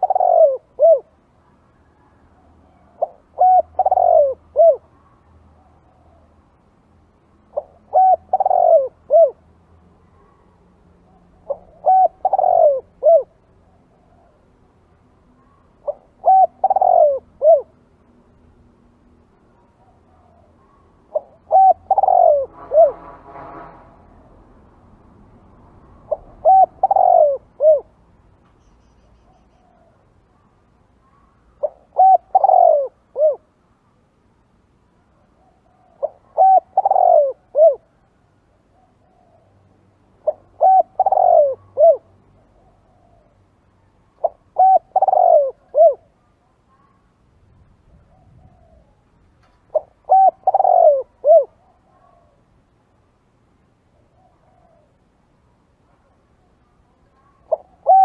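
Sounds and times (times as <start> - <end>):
dove cooing: 0.0 - 1.2, 1.8 - 5.1, 7.5 - 9.4, 11.1 - 14.4, 15.4 - 17.8, 19.8 - 23.0, 26.1 - 28.0, 31.0 - 33.5, 35.4 - 38.0, 40.2 - 43.4, 44.2 - 46.9, 47.9 - 49.0, 49.6 - 52.4, 54.0 - 55.0, 57.1 - 58.0.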